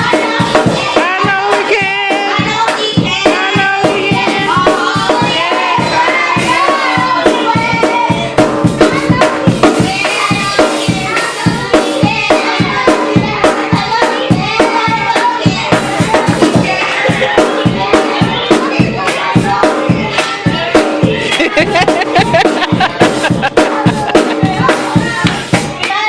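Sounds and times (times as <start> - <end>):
children's choir singing: 0.0 - 26.0
drums and percussion beat: 0.0 - 26.0.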